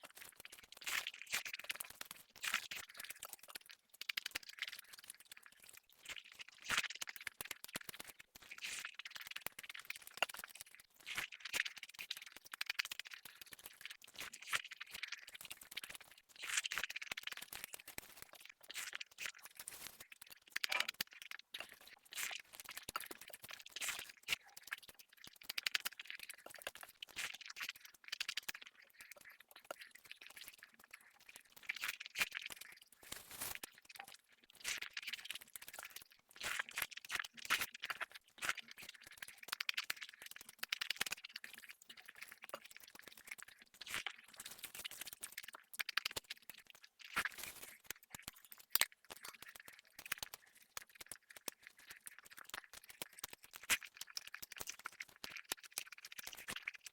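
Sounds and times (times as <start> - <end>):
food being chewed: 0.0 - 56.9
crisp clicks and crackles: 6.9 - 56.9.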